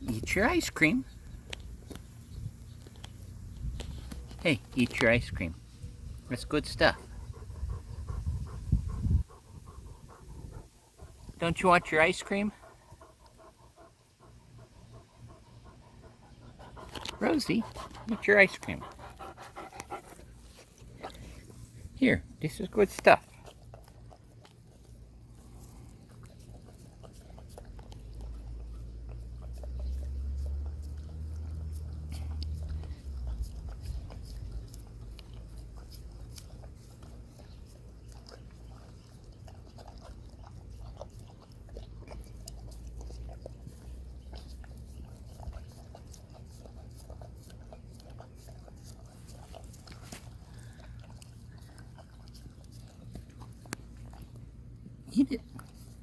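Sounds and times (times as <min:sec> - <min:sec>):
dog licking: 0:00.1 - 0:56.0.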